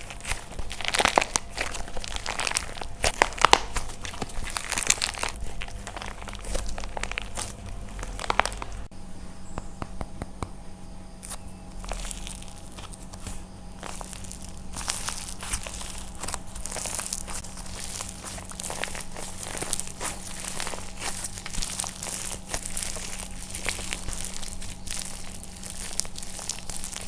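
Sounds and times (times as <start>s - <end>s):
dry clay crunching by hand: 0.0s - 27.0s.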